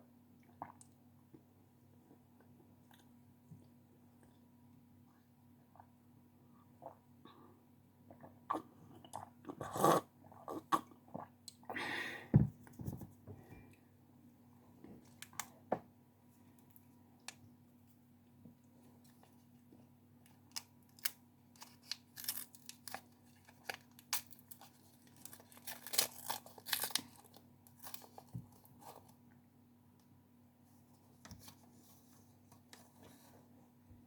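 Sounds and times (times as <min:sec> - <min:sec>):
plastic wrapper crackling and tearing: 0:20.5 - 0:28.3.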